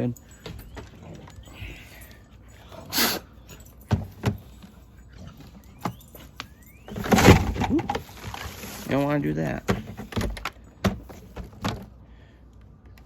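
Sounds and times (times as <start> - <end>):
plastic parts scraping: 6.9 - 10.6.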